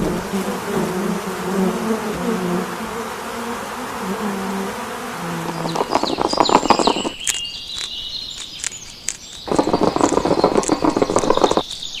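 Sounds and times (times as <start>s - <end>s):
loud rapid buzzing: 4.5s - 7.2s
high chirping calls: 5.4s - 12.0s.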